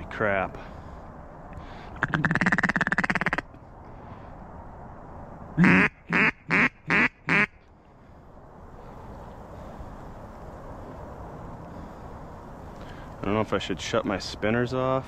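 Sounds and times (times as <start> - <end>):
duck call chuckle: 2.0 - 3.4, 5.6 - 7.5
duck call quacks: 2.0 - 3.4, 5.6 - 7.6.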